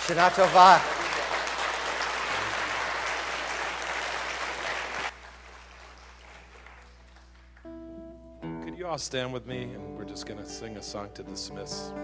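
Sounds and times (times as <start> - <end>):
congregation clapping: 0.0 - 7.9
guitar chord: 7.6 - 12.0.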